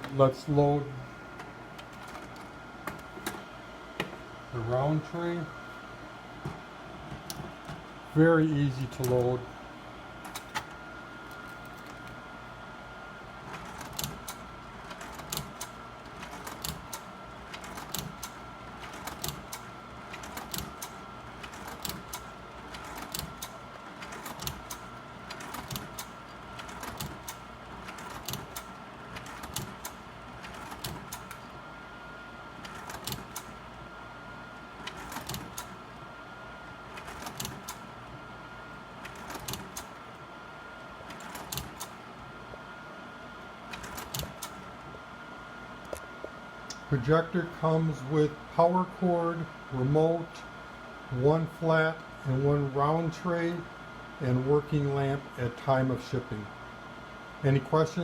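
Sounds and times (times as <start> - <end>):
projector cooling fan humming: 0.0 - 58.0
slide-change mechanism clacking: 13.5 - 31.4, 32.6 - 33.6, 34.8 - 35.8, 37.0 - 37.9, 41.1 - 42.0, 43.7 - 44.6.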